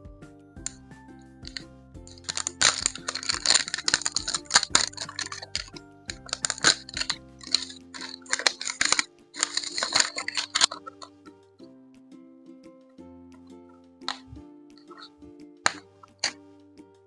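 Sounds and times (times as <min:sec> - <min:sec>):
soft background music: 0:00.0 - 0:17.0
packaging crinkling: 0:02.2 - 0:10.9.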